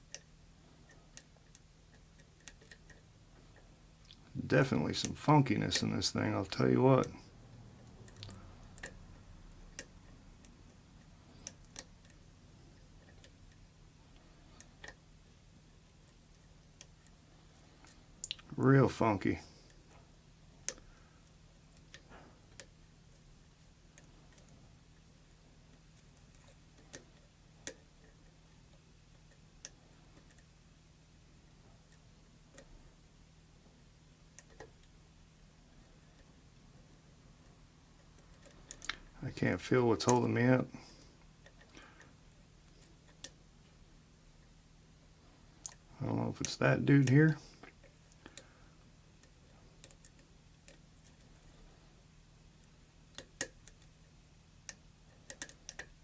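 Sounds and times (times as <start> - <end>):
faint low hum: 0.0 - 56.0
lock pick clicking: 54.7 - 55.9.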